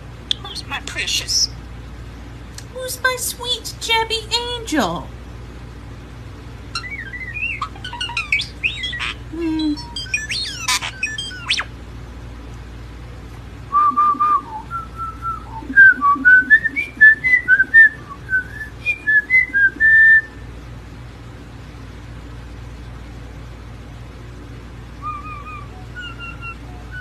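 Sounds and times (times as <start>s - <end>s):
steady low hum: 0.0s - 27.0s
person whistling a tune: 13.7s - 20.3s.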